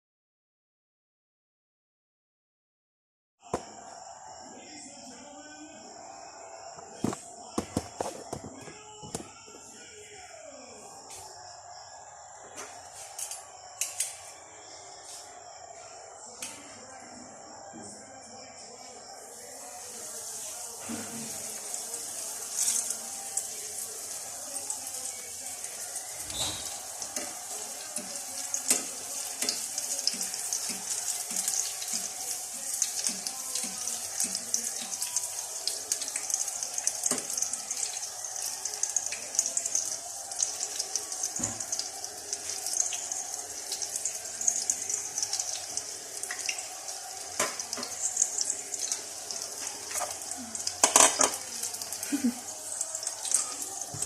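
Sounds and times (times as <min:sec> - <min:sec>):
meat sizzling in hot oil: 0:19.3 - 0:54.0.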